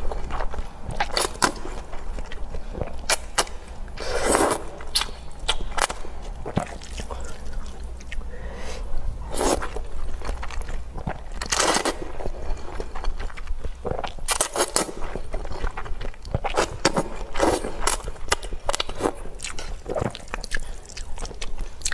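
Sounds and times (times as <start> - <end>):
chewing with wet smacks: 0.0 - 4.0, 4.6 - 8.3, 9.1 - 21.9
slurping noodle soup: 0.0 - 9.9, 11.0 - 13.0, 16.4 - 21.0.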